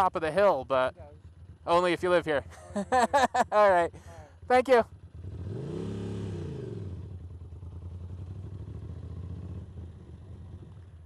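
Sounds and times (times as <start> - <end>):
motorcycle engine revving: 4.2 - 11.0.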